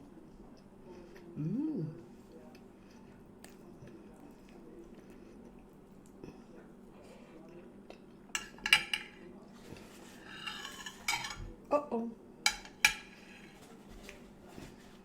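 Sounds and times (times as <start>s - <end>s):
cutlery clinking on plate: 8.3s - 9.2s, 10.2s - 11.6s, 12.5s - 14.2s.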